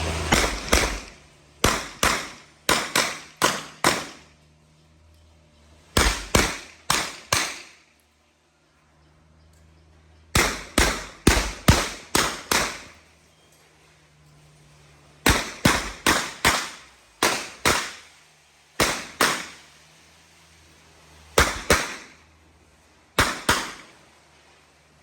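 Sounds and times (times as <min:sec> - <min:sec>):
handgun shots: 0:00.3 - 0:04.2, 0:06.0 - 0:07.7, 0:10.4 - 0:12.9, 0:15.3 - 0:18.0, 0:18.8 - 0:19.6, 0:21.4 - 0:22.2, 0:23.2 - 0:23.9.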